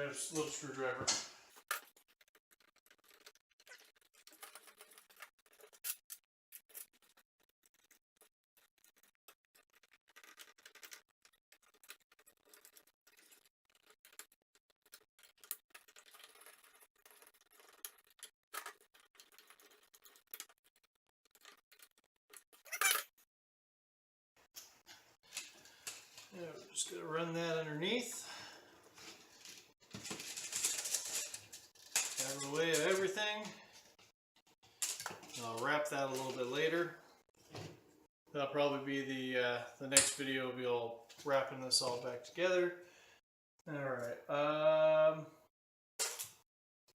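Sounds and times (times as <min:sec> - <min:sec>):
small screws clicking and scraping: 0:01.5 - 0:23.2, 0:24.4 - 0:26.3, 0:29.0 - 0:35.6
metal parts clattering: 0:29.4 - 0:33.2, 0:34.8 - 0:35.6.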